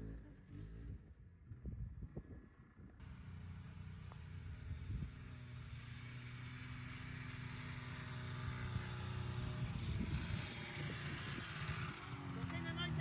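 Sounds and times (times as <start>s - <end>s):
snowmobile engine running: 3.1s - 13.0s.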